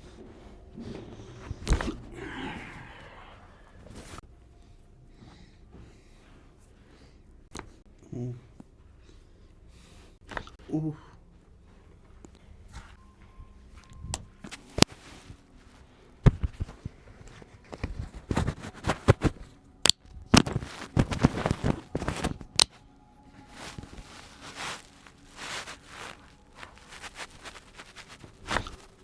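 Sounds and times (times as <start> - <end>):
rustling and rubbing: 0.0 - 4.2, 13.7 - 29.0.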